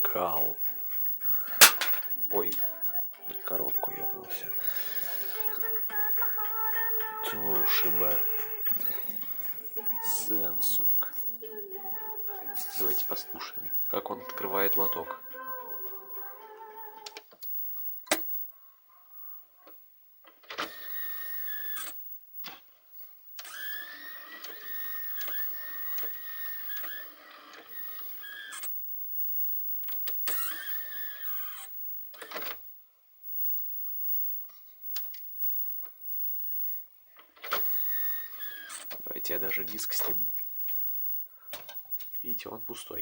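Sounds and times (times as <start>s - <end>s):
disc drive tray motor: 0.0s - 18.4s, 20.3s - 22.6s, 23.4s - 28.8s, 29.8s - 32.6s, 36.7s - 40.9s
tray squeaking: 1.6s - 2.1s.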